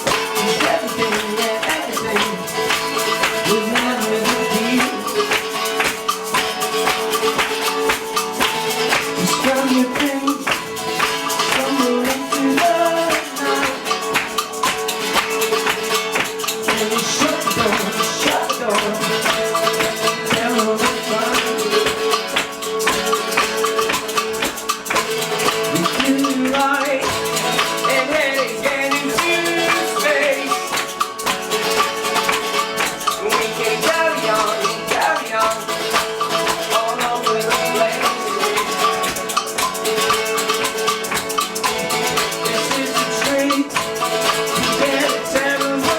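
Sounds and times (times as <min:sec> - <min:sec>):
live band music: 0:00.0 - 0:45.9
shaken hand percussion: 0:00.0 - 0:45.9.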